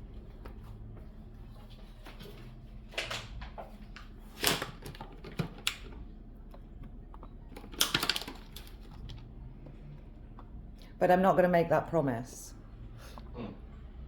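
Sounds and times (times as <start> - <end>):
hard objects clicking and clattering: 4.4 - 10.5.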